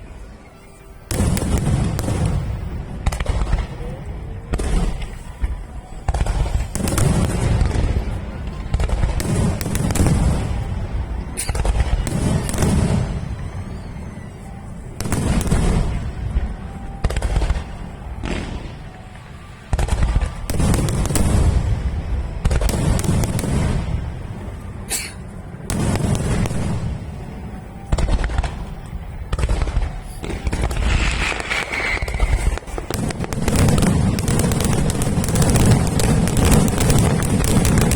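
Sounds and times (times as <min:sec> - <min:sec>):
fireworks booming and crackling: 0:00.0 - 0:37.9
high firework whistle: 0:04.6 - 0:37.9
sharp cracks and crackles: 0:27.9 - 0:37.9
firework shells bursting: 0:29.6 - 0:37.9.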